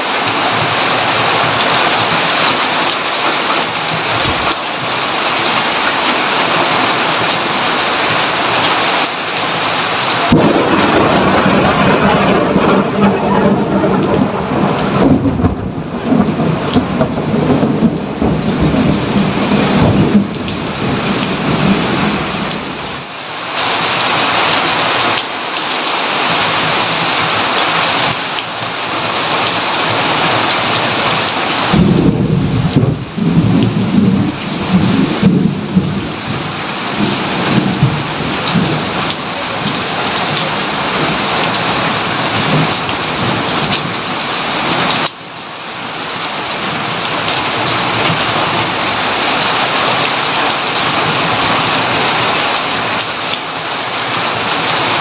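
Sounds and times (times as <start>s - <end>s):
heavy rain: 0.0s - 55.0s
thunder rumble: 10.2s - 23.1s, 29.9s - 45.0s.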